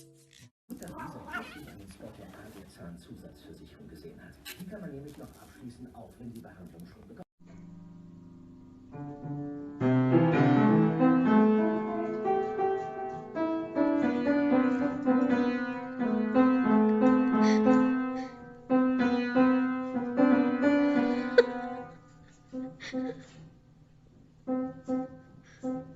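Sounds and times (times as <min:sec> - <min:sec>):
piano melody: 0:08.4 - 0:21.9, 0:24.4 - 0:25.9.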